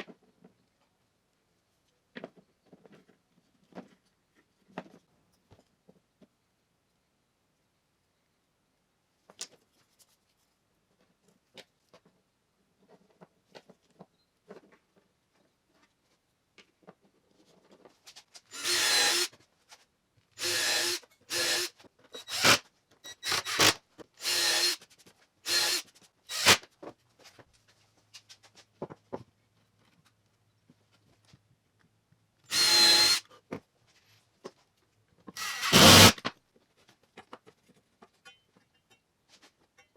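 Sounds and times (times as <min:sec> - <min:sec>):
power drill running: 0:18.5 - 0:19.3, 0:20.4 - 0:24.8, 0:25.5 - 0:26.6, 0:32.5 - 0:33.2, 0:35.4 - 0:36.2.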